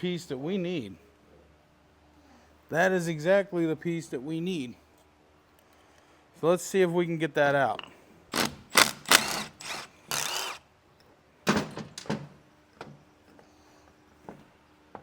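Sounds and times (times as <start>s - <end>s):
cordless power tool bursts: 8.3s - 10.6s.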